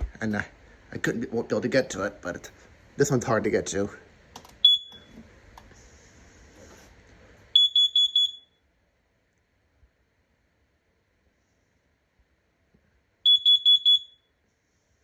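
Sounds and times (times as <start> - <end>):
carbon monoxide alarm beeps: 4.6 - 5.2, 7.5 - 8.6, 13.2 - 14.4.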